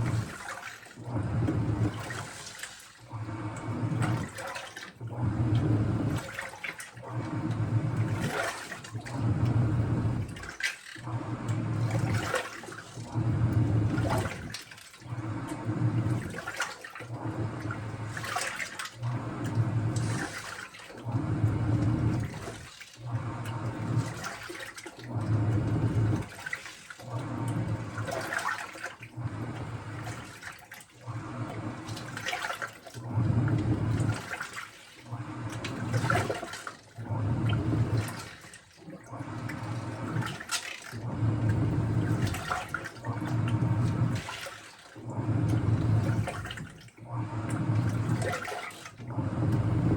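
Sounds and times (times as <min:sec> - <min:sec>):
washing machine running: 0:00.0 - 0:49.9.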